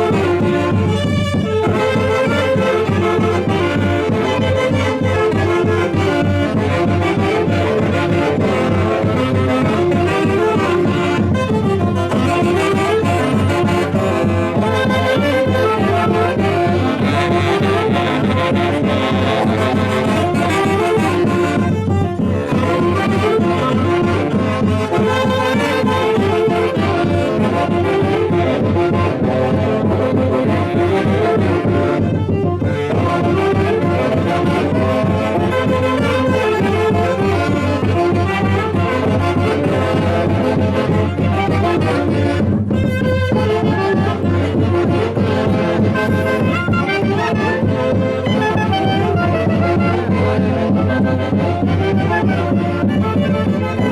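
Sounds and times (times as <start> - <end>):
festival band with brass and saxophones: 0.0 - 53.9.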